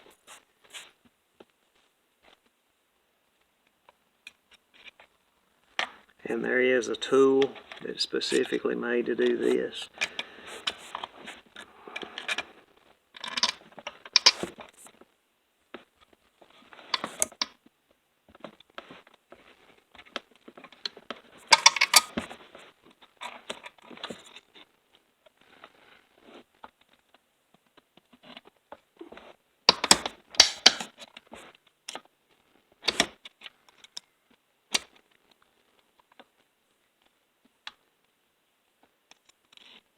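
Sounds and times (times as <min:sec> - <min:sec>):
spring clicking and scraping on metal: 0:13.2 - 0:14.5, 0:17.0 - 0:17.4, 0:21.5 - 0:22.2.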